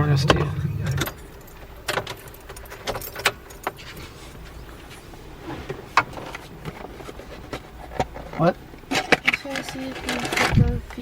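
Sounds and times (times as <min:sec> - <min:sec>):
low steady hum: 0:00.0 - 0:11.0
light clicks and rattles: 0:00.2 - 0:05.1, 0:05.7 - 0:11.0.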